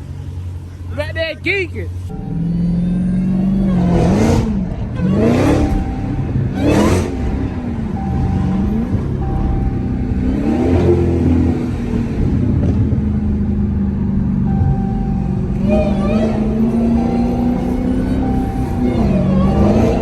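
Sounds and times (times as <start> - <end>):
car engine revving: 0.0 - 20.0.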